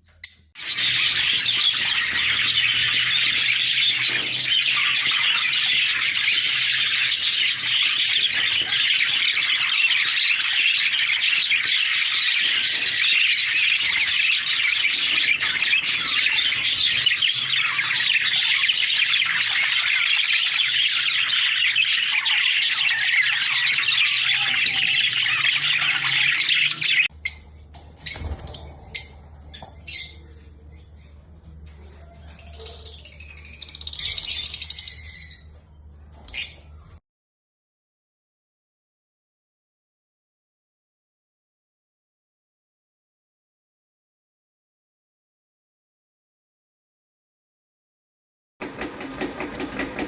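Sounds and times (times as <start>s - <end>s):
bird chirps: 0.0s - 37.0s
parrots chattering and squawking: 0.1s - 35.5s.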